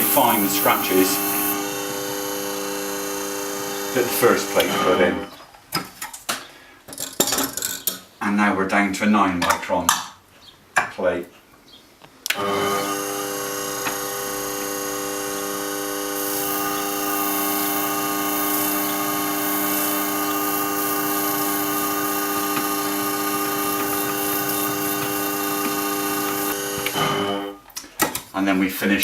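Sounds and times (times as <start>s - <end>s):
blade grinding hiss: 0.0s - 5.3s, 12.4s - 27.6s
motor-driven hone humming: 0.0s - 5.3s, 12.3s - 27.6s.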